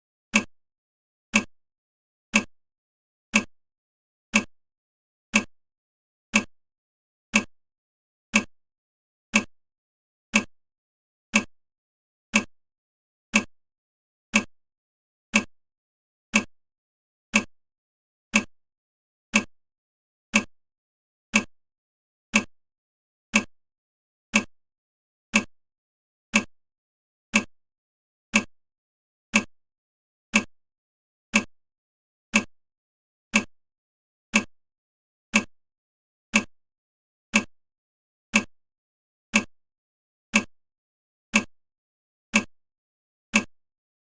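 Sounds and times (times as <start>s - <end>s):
clock ticking: 0.3s - 0.5s, 1.3s - 1.5s, 2.3s - 2.5s, 3.3s - 3.5s, 4.3s - 4.5s, 5.3s - 5.5s, 6.3s - 6.5s, 7.3s - 7.5s, 8.3s - 8.5s, 9.3s - 9.5s, 10.3s - 10.5s, 11.3s - 11.5s, 12.3s - 12.5s, 13.3s - 13.5s, 14.3s - 14.5s, 15.3s - 15.5s, 16.3s - 16.5s, 17.3s - 17.5s, 18.3s - 18.5s, 19.3s - 19.5s, 20.3s - 20.5s, 21.3s - 21.5s, 22.3s - 22.5s, 23.3s - 23.5s, 24.3s - 24.5s, 25.3s - 25.5s, 26.3s - 26.5s, 27.3s - 27.5s, 28.3s - 28.5s, 29.3s - 29.5s, 30.3s - 30.5s, 31.3s - 31.5s, 32.3s - 32.5s, 33.3s - 33.5s, 34.3s - 34.5s, 35.3s - 35.5s, 36.3s - 36.5s, 37.3s - 37.5s, 38.3s - 38.5s, 39.3s - 39.5s, 40.3s - 40.5s, 41.3s - 41.5s, 42.3s - 42.6s, 43.3s - 43.6s.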